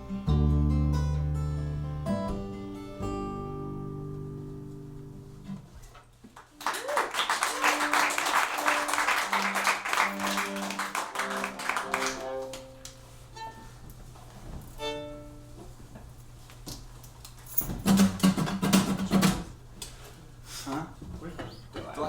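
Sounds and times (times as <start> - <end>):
acoustic guitar and viola playing: 0.0 - 5.6, 8.6 - 13.8, 14.7 - 15.6.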